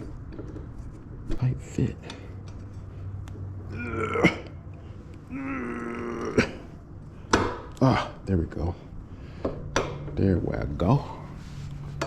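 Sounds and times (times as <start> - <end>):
man groaning with effort: 3.7 - 4.6, 5.2 - 6.8.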